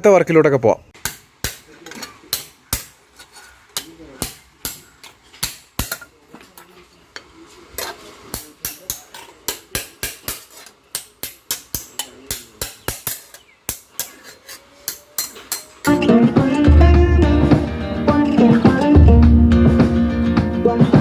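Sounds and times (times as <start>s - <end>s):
hammer striking sheet metal: 1.0s - 3.0s, 4.2s - 6.0s, 8.3s - 14.2s.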